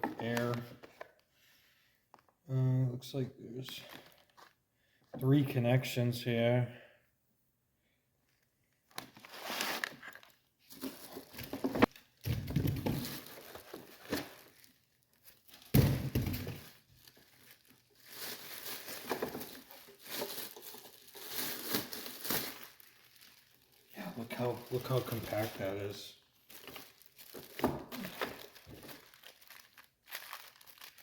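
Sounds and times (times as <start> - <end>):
packaging crinkling and rustling: 8.3 - 31.0.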